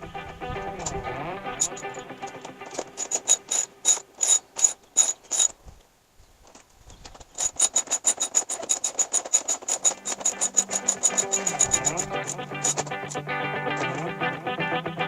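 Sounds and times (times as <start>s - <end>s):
ratchet clicking: 0.8s - 5.6s, 7.1s - 13.2s, 13.8s - 14.0s.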